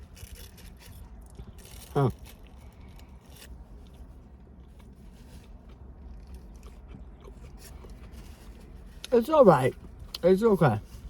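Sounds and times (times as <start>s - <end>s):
low steady hum: 0.0s - 11.0s
person chewing: 0.1s - 8.3s.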